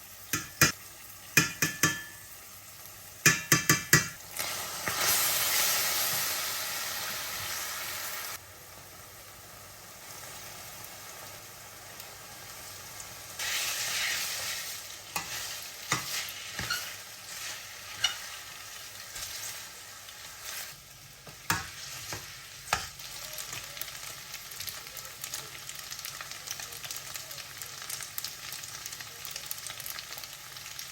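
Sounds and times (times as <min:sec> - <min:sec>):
food sizzling in a frying pan: 0:00.0 - 0:30.9
utensil knocking against pan: 0:01.4 - 0:02.2, 0:03.3 - 0:04.2.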